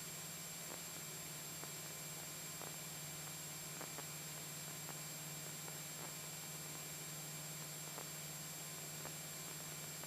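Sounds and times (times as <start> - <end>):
faint ticks: 2.6 - 6.8, 7.6 - 8.2.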